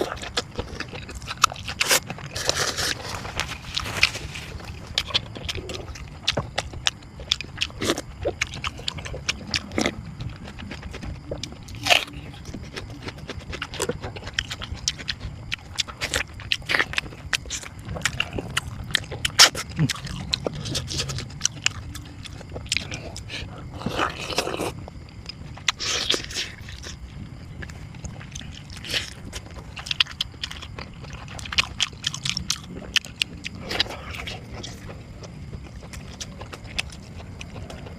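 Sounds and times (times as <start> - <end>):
chewing and crunching food: 0.0 - 37.9.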